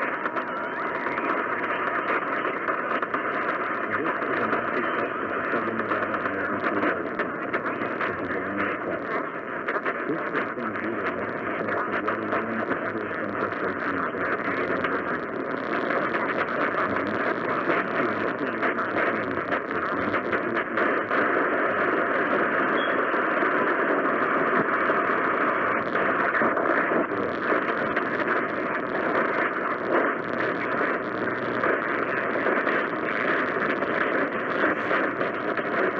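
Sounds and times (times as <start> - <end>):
radio static hiss: 0.0 - 35.9.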